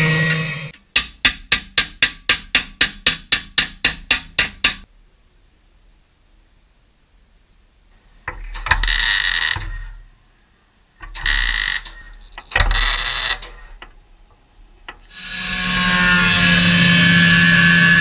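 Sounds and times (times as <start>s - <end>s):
mig welding bursts: 11.1s - 13.6s.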